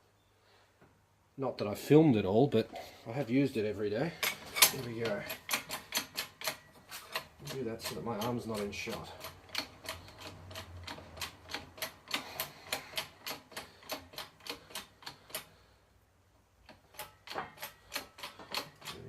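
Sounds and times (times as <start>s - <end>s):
bearing press clicking: 4.2s - 15.5s, 16.6s - 19.0s.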